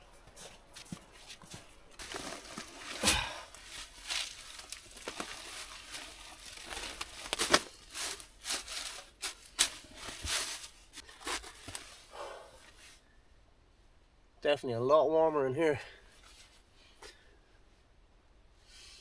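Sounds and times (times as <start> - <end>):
rustling and crunching: 0.0 - 13.0.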